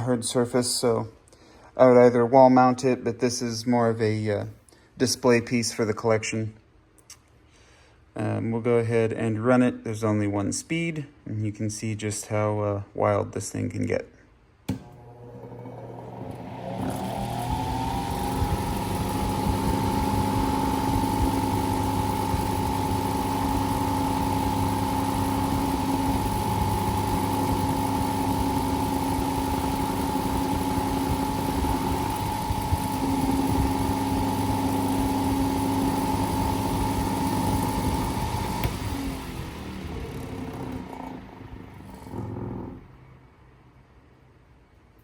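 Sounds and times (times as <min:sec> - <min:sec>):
table fan humming and whining: 0:14.7 - 0:43.4.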